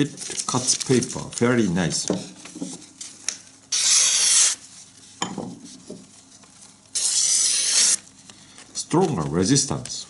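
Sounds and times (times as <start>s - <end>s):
knife slicing paper: 3.7s - 4.6s, 6.9s - 8.1s.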